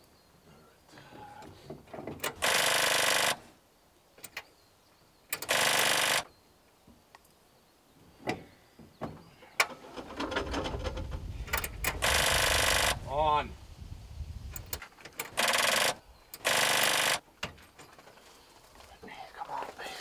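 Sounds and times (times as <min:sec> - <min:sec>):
engine cranking: 0:02.2 - 0:03.4, 0:09.6 - 0:13.0, 0:14.6 - 0:17.2.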